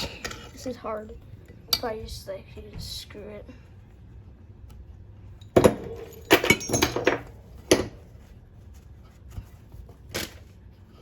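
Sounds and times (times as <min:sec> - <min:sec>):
metal tools clinking and knocking: 0:05.4 - 0:07.9.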